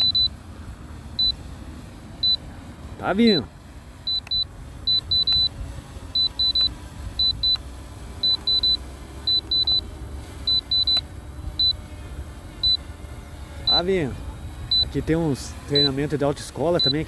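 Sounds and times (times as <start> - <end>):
short high electronic beeps: 0.0 - 0.3, 8.2 - 9.8
wind rumble on microphone: 11.0 - 15.8.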